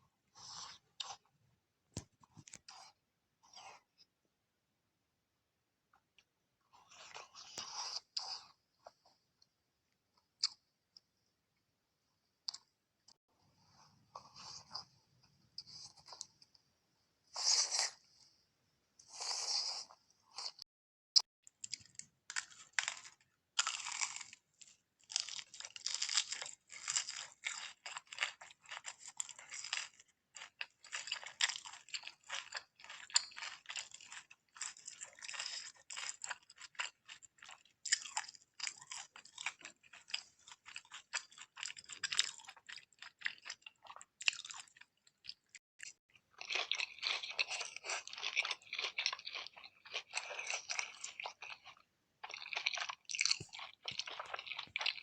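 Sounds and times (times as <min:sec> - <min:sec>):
crisp crunchy chewing: 0:21.4 - 0:55.0.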